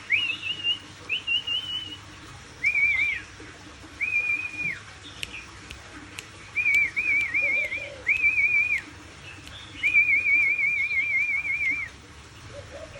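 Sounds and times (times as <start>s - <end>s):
songbird whistling: 0.0s - 3.3s, 4.0s - 5.5s, 6.5s - 12.0s
faint low cooing: 7.3s - 8.4s, 11.8s - 12.9s.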